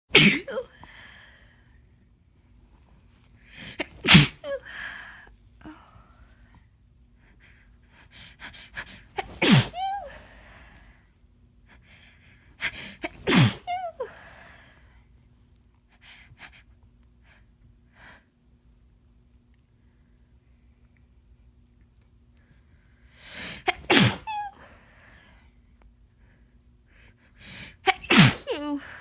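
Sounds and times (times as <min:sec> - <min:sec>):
woman sneezing: 0:00.1 - 0:00.8, 0:03.7 - 0:04.7, 0:09.1 - 0:10.3, 0:12.9 - 0:14.2, 0:23.5 - 0:24.7, 0:27.8 - 0:29.0.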